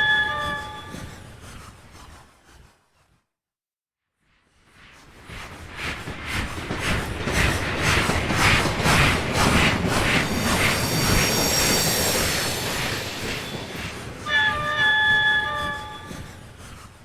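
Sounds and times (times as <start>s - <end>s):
steady rushing hiss: 5.4s - 14.6s
steam locomotive chuffing: 5.5s - 17.0s
thin high ringing: 10.0s - 16.2s.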